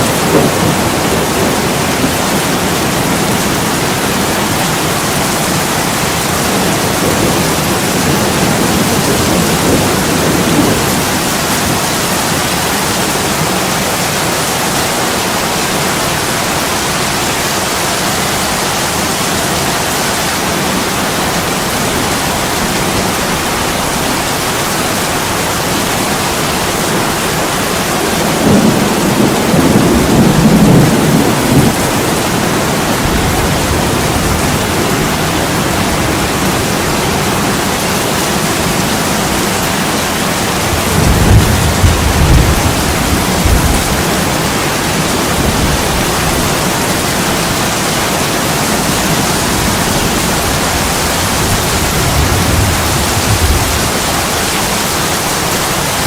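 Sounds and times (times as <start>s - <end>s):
rolling thunder: 0.0s - 14.0s, 26.8s - 37.8s, 40.4s - 47.5s, 48.6s - 54.8s
heavy rain on a window: 0.0s - 56.0s.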